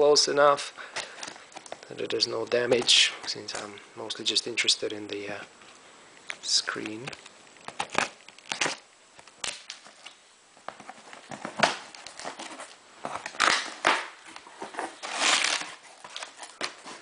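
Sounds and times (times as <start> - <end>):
packing material rustling: 6.8 - 17.0.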